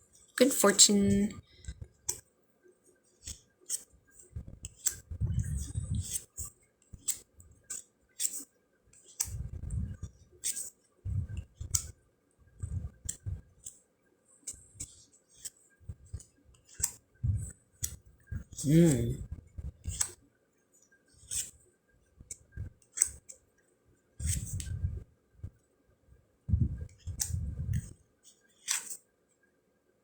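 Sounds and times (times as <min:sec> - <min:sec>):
cardboard cards being flipped: 0:04.6 - 0:08.4, 0:21.2 - 0:21.5, 0:24.2 - 0:24.7, 0:28.6 - 0:29.0.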